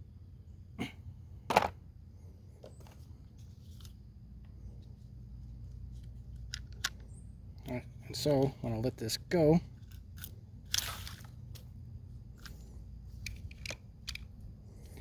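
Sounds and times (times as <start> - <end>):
steady low hum: 0.0 - 15.0
small parts clicking and tapping: 5.6 - 8.9, 9.7 - 15.0.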